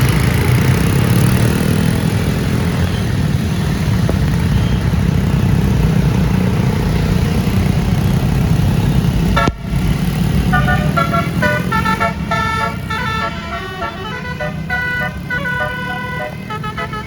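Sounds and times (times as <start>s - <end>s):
bus engine rumbling: 0.0s - 17.0s
musical bus horn melody: 10.4s - 17.0s.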